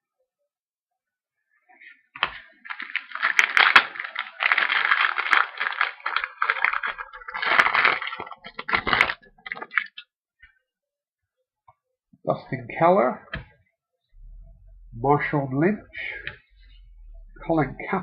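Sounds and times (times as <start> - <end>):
plastic foil wrapper crinkling: 2.2 - 10.0.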